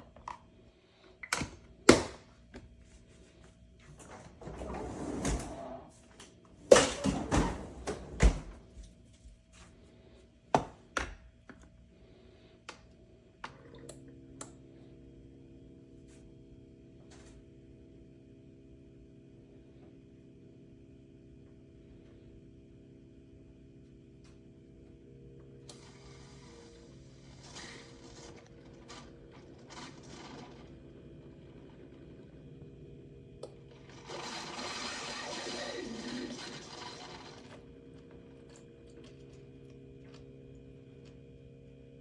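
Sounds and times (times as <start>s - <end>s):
coffee machine humming: 11.5s - 42.0s.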